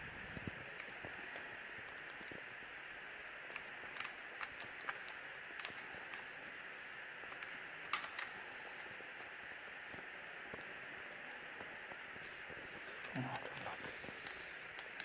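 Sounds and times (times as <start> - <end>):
faint steady hiss: 0.0 - 15.0
light clicks and taps: 3.5 - 6.4.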